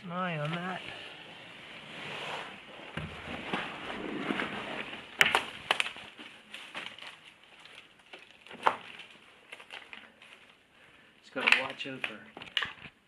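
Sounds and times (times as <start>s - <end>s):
footsteps crunching on debris: 3.0s - 10.6s.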